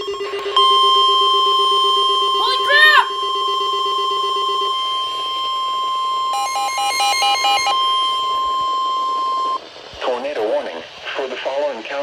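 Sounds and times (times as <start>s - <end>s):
piercing high alarm tone: 0.0s - 9.6s
rapid beeping: 0.0s - 9.6s.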